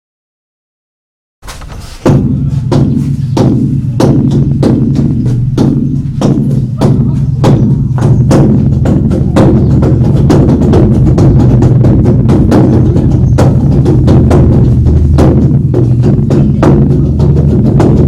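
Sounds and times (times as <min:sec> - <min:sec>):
large drum beaten: 0:01.4 - 0:18.0.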